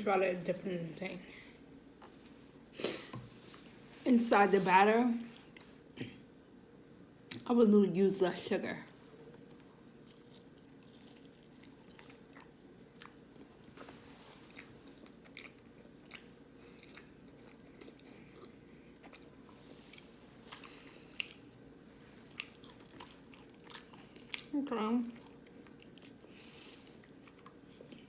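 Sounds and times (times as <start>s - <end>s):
person chewing crunchy food: 9.4s - 24.6s, 25.2s - 28.0s.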